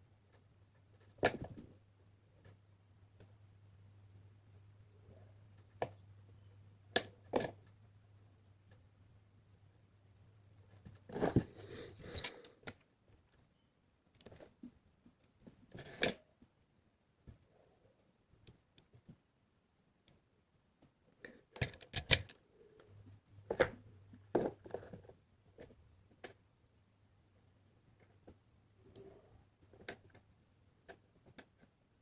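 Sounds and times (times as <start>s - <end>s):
electronic parts clicking and rustling: 21.4s - 23.6s.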